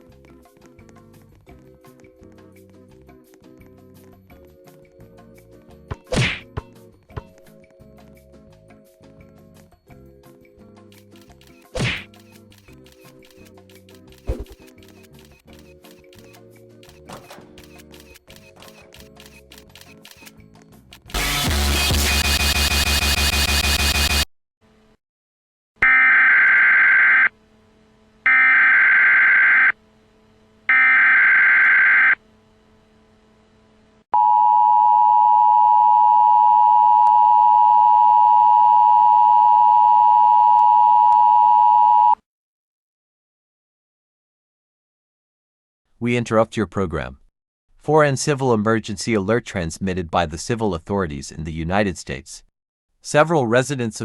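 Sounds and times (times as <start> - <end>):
data burst tones: 21.1 - 24.3.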